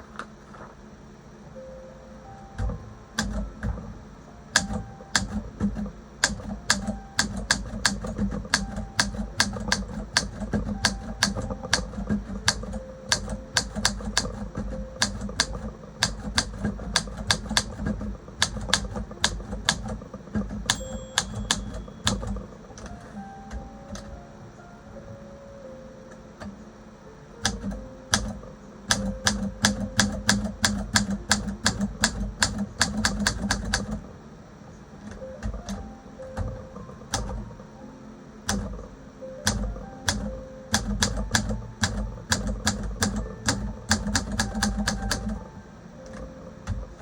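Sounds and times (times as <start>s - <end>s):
manual typewriter clacking: 2.6s - 24.2s, 27.4s - 34.1s, 35.0s - 37.6s, 38.4s - 47.0s
typewriter margin bell: 4.6s - 23.2s.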